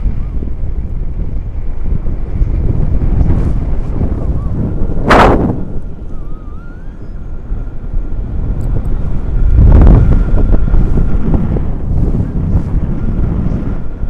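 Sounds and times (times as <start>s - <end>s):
wind buffeting microphone: 0.0s - 14.0s
faint wavering high whistle: 5.6s - 7.8s.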